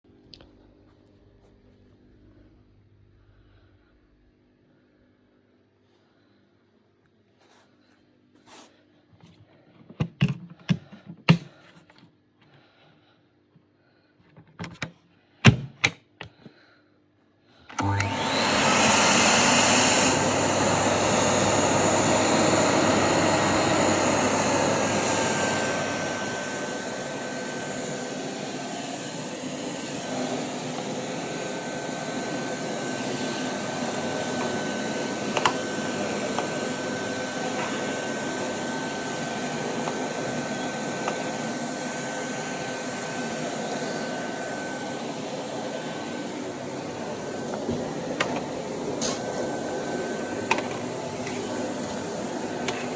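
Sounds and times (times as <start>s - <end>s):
vacuum cleaner whining: 17.6s - 52.9s.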